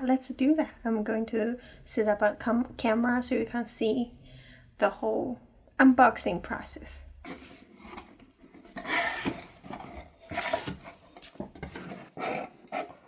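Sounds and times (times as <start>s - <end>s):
objects scraping on a surface: 7.2s - 13.0s.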